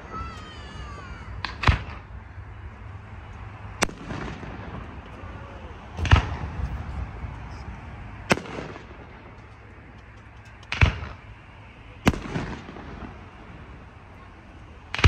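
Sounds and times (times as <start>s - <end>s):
fireworks bangs: 0.0s - 2.4s, 3.8s - 15.0s
fireworks crackle: 3.4s - 15.0s.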